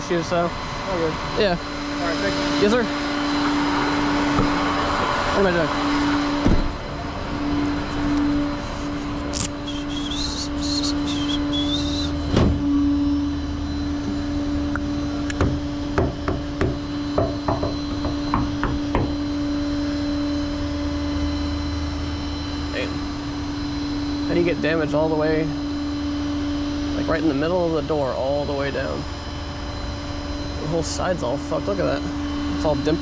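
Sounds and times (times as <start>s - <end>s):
steady hum: 0.0s - 33.0s.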